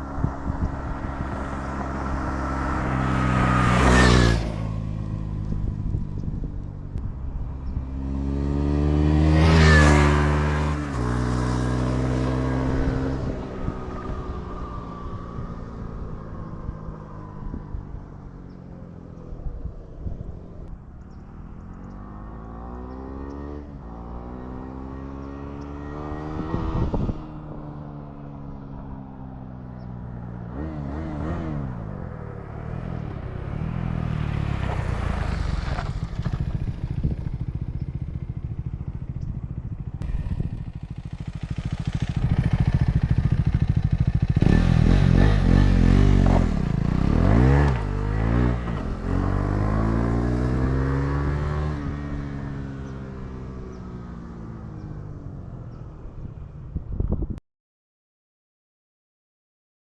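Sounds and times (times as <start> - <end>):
motorcycle engine revving: 0.0 - 6.5, 7.8 - 14.6, 30.2 - 55.5.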